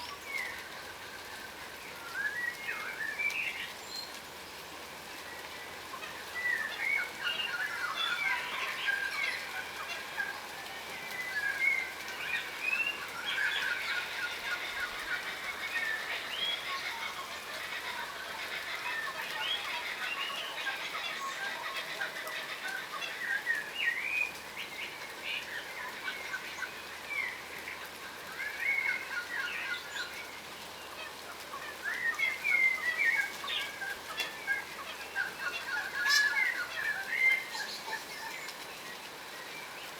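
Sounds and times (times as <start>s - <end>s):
parrots chattering and whistling: 6.1s - 24.0s, 31.0s - 38.6s.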